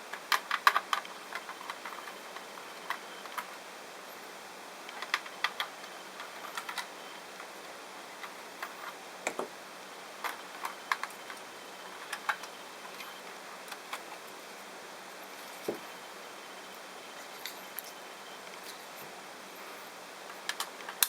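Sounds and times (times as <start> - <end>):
small hard parts clicking: 0.1 - 3.5, 4.9 - 7.5, 10.2 - 14.3, 20.3 - 21.0.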